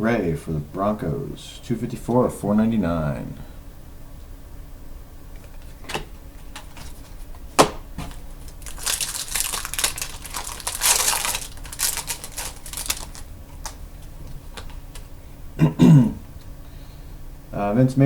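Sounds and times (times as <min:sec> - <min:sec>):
plastic foil packaging crinkling: 0:08.1 - 0:14.8.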